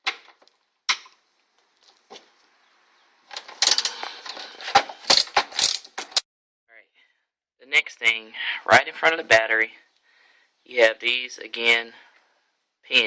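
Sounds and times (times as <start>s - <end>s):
clatter of metal clicks and knocks: 3.3s - 6.2s.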